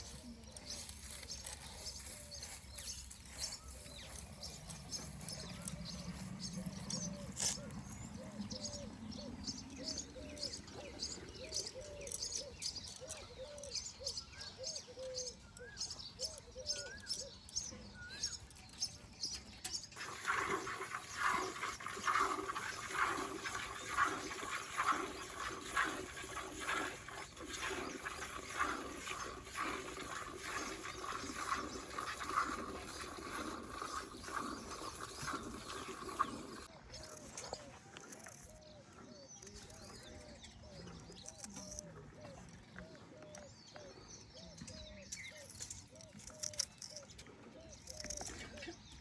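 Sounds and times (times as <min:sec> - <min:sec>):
birds chirping: 0:00.0 - 0:49.0
water splashing: 0:20.0 - 0:36.7.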